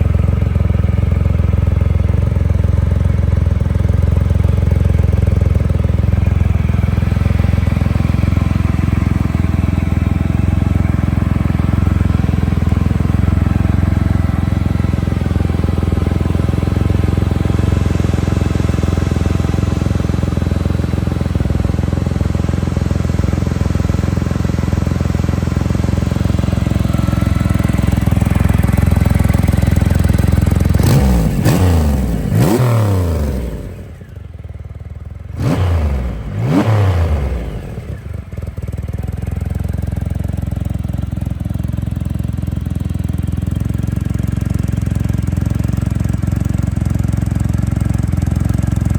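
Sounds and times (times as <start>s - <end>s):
motorcycle engine idling: 0.0s - 48.9s
motorcycle throttle blips: 5.1s - 22.1s.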